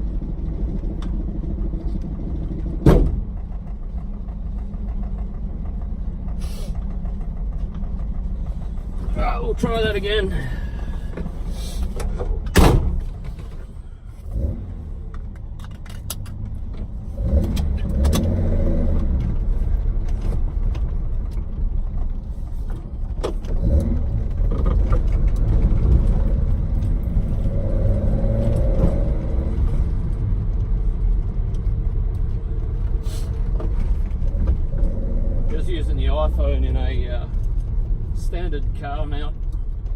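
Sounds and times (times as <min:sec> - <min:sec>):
car engine revving through gears: 0:14.1 - 0:15.4, 0:16.9 - 0:20.2, 0:23.2 - 0:31.7, 0:33.7 - 0:39.2.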